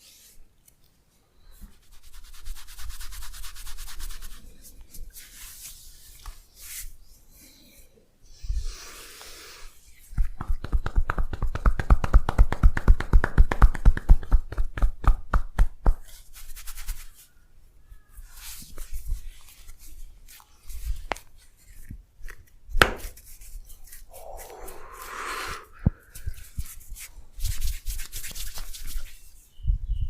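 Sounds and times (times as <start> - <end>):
hands striking body: 22.8 - 23.2.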